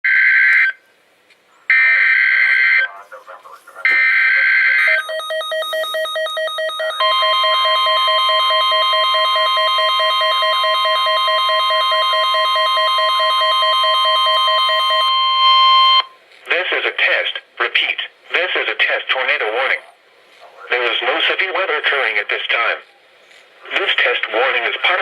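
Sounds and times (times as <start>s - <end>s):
loud steady alert tone: 3.8s - 16.2s.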